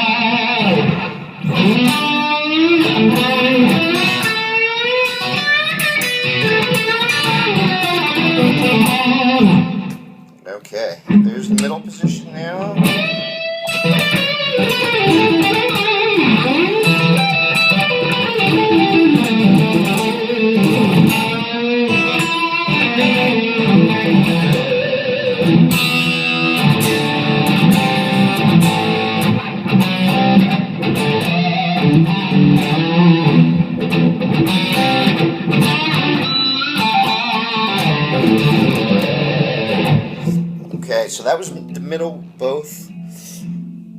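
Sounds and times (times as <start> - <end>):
distorted electric guitar: 0.0 - 43.9.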